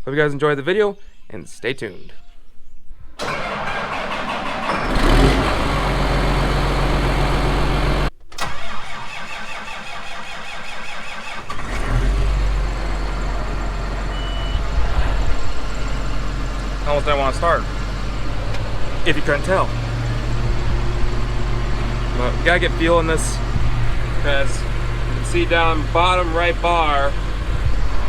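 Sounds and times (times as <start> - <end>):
diesel engine running: 3.2 - 8.1, 11.3 - 28.0
starter motor cranking: 3.2 - 28.0.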